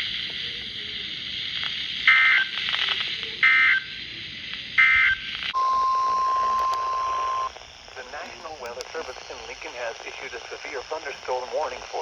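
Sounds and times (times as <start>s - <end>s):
steady single-pitch alert tone: 5.6s - 7.5s.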